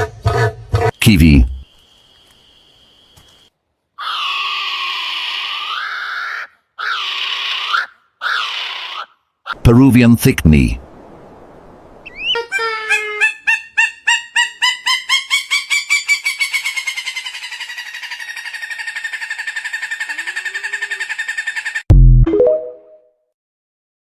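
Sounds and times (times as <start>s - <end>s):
bird piping call: 12.0s - 21.8s.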